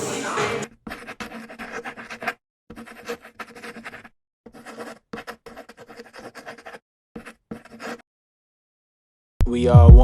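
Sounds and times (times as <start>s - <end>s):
scratchy rubbing: 0.1s - 8.0s.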